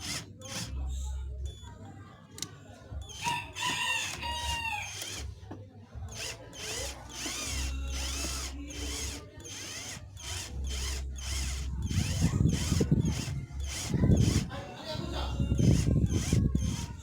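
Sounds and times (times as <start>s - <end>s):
power tool driving screws: 0.0s - 0.8s, 4.8s - 5.2s, 6.1s - 14.5s, 15.6s - 17.0s.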